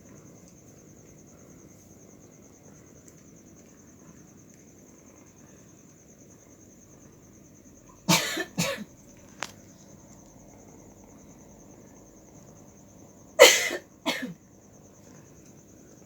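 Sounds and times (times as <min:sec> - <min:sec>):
high insect trill: 0:00.0 - 0:16.0
short harsh coughs: 0:08.1 - 0:08.9, 0:13.4 - 0:14.4.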